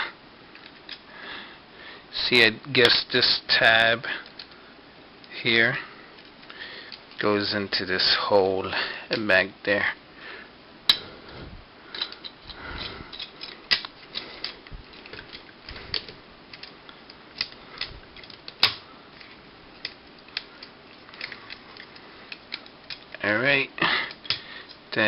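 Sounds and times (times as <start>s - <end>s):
plastic parts snapping into place: 13.1s - 16.7s, 17.4s - 18.8s.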